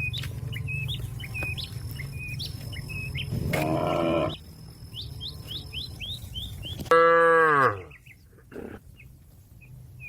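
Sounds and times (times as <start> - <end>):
cow mooing: 3.5 - 4.4, 6.9 - 7.9.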